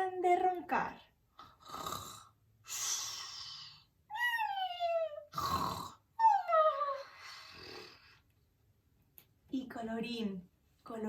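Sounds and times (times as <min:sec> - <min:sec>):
woman imitating snoring: 0:01.4 - 0:03.8, 0:05.3 - 0:06.4, 0:07.3 - 0:08.1.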